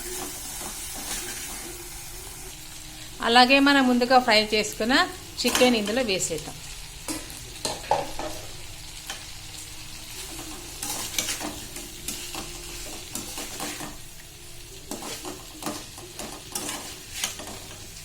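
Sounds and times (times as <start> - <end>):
spatula scraping pan: 0.0 - 1.9, 10.1 - 14.0, 14.8 - 18.0
chicken sizzling in pan: 0.0 - 18.0.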